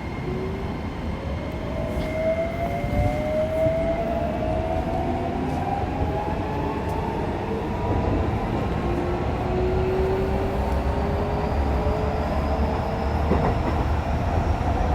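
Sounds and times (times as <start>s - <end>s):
train rumbling on rails: 0.0s - 14.9s.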